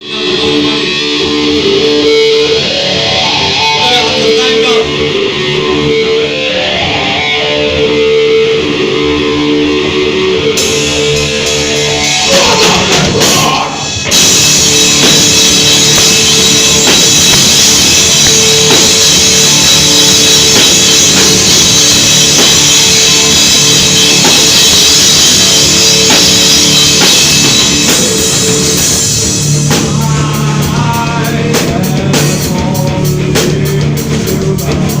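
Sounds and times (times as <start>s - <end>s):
rock song with guitars and drums: 0.0s - 35.0s.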